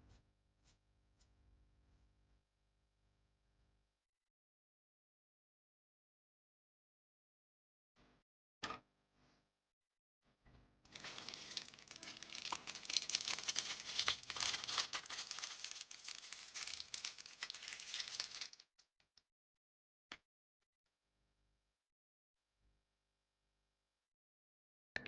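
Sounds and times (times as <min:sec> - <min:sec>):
packaging crinkling: 0:10.9 - 0:18.6.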